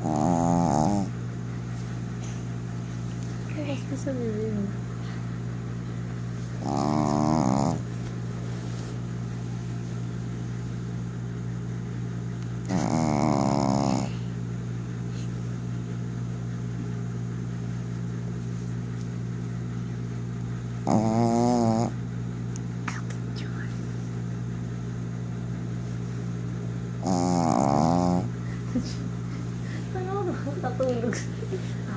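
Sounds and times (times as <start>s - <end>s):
person snoring: 0.0s - 1.1s, 6.6s - 7.8s, 12.7s - 14.2s, 20.9s - 21.9s, 27.0s - 28.3s.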